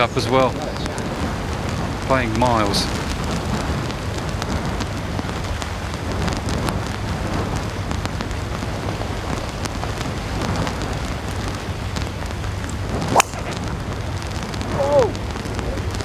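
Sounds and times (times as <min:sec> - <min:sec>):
driving rain: 0:00.0 - 0:16.0
sharp crack: 0:00.0 - 0:16.0
wind buffeting microphone: 0:00.0 - 0:16.0
brief voice-like cry: 0:14.7 - 0:15.2.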